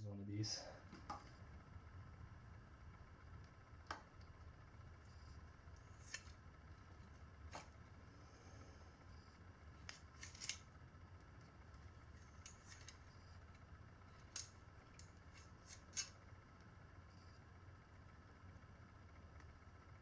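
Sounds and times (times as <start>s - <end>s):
pliers clicking on wire: 9.8s - 10.7s, 12.2s - 13.0s, 14.2s - 16.2s.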